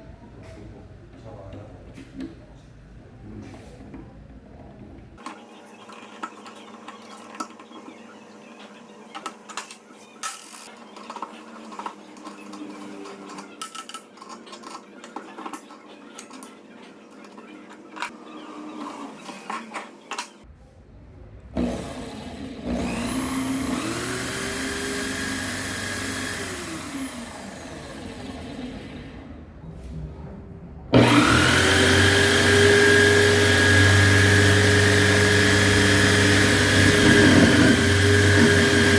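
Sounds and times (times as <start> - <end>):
electric drill motor whining: 21.6 - 29.2, 31.0 - 38.9.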